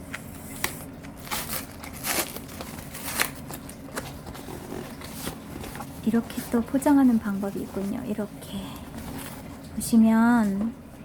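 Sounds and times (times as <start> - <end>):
packaging crinkling and rustling: 0.3 - 8.2.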